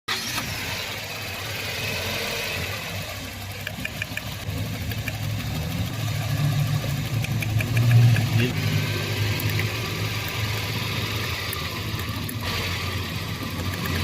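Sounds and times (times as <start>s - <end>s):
car engine idling unevenly: 0.1s - 14.0s
light ticks: 7.2s - 8.4s.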